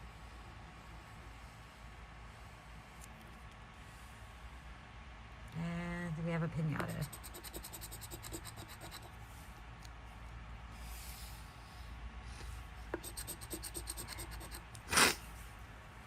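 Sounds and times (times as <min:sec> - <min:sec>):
lottery ticket being scratched: 0:06.8 - 0:09.1, 0:13.0 - 0:15.1
loud nose and throat snort: 0:14.9 - 0:15.2.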